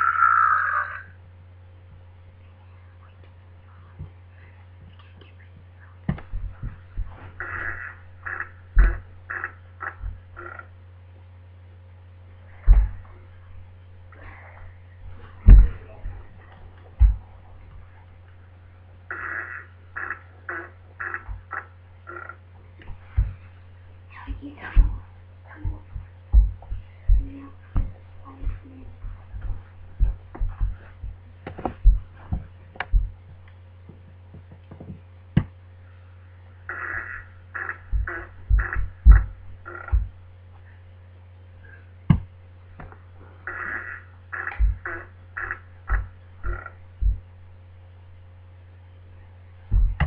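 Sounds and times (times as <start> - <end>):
steady low hum: 0.0 - 50.0
loud low thumps: 15.1 - 17.9, 24.2 - 33.2, 37.8 - 40.3, 45.9 - 47.3, 49.7 - 50.0.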